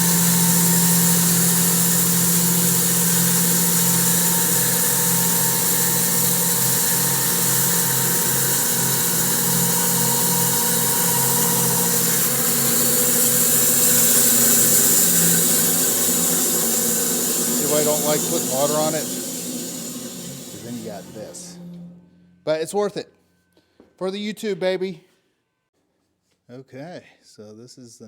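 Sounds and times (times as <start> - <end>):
saw blade cutting log: 0.0 - 21.7
motor hum: 0.0 - 22.4.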